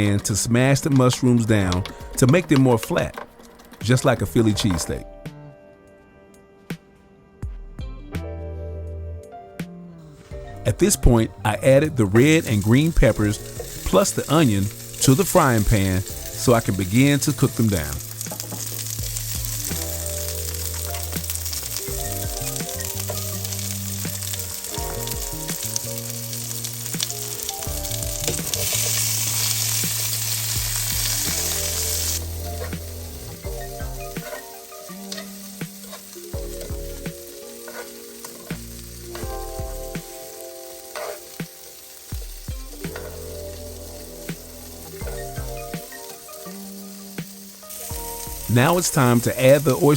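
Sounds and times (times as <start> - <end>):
background music: 0.0 - 49.9
vegetables sizzling in a frying pan: 12.2 - 49.9.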